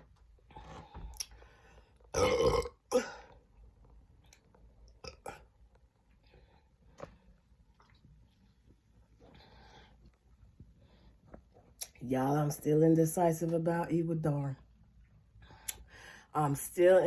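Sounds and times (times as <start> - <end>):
woman burping: 2.1 - 3.4, 5.0 - 5.5.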